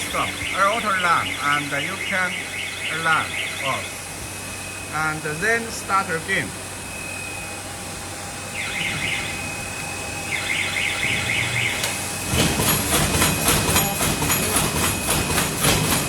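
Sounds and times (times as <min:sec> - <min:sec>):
warbling electronic alarm tone: 0:00.0 - 0:06.2, 0:06.8 - 0:12.4
machine mechanical clatter: 0:10.5 - 0:16.0.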